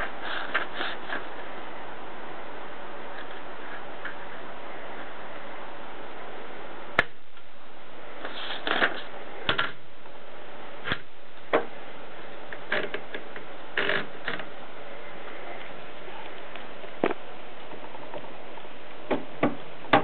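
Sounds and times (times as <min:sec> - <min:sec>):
steady hiss: 0:00.0 - 0:20.0.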